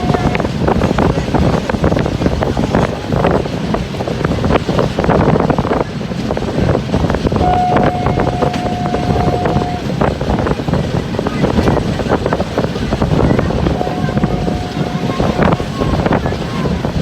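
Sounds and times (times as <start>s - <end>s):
wind buffeting microphone: 0.0s - 17.0s
steady whistle-like tone: 7.4s - 9.8s, 13.7s - 16.1s.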